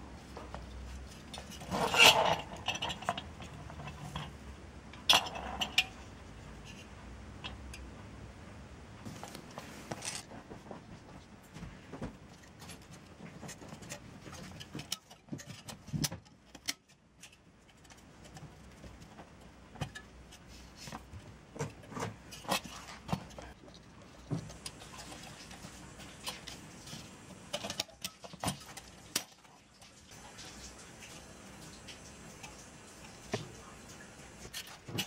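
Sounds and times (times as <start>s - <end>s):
metal and plastic parts clicking: 12.3s - 26.7s.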